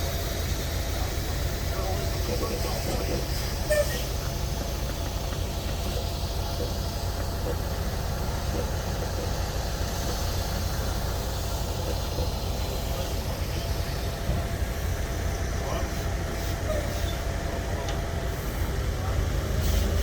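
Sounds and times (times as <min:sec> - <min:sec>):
engine idling: 0:00.0 - 0:20.0.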